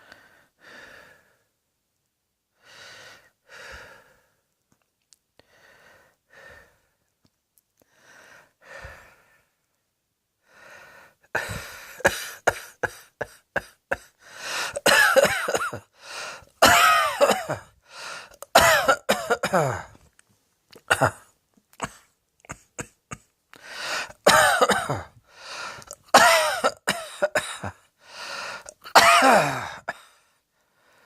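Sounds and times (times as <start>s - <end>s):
person breathing: 0.0s - 1.5s, 2.6s - 4.5s, 5.4s - 7.0s, 7.8s - 9.6s, 10.4s - 13.4s, 14.0s - 14.8s, 15.9s - 16.6s, 17.8s - 18.4s, 23.5s - 24.3s, 25.2s - 26.0s, 28.0s - 28.8s, 29.6s - 31.0s
strained gasps: 5.4s - 7.0s, 7.8s - 9.5s, 10.4s - 14.8s, 15.9s - 16.6s, 17.8s - 18.5s, 23.5s - 24.3s, 25.0s - 26.1s, 28.0s - 28.9s
person coughing: 11.4s - 15.9s, 16.6s - 17.7s, 18.4s - 20.0s, 20.8s - 23.3s, 24.0s - 25.1s, 25.8s - 27.8s, 28.6s - 30.1s.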